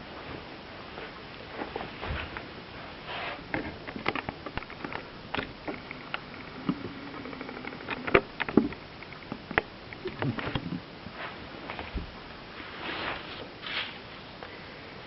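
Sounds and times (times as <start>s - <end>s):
faint low steady hum: 0.0s - 15.0s
small clicks and knocks: 3.5s - 10.8s.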